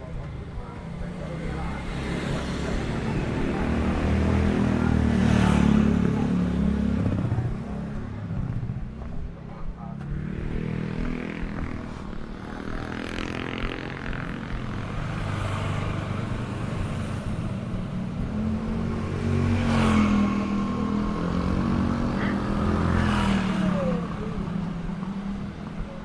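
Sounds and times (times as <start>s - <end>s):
car engines passing: 0.0s - 26.0s
motorbike engines passing: 0.0s - 26.0s.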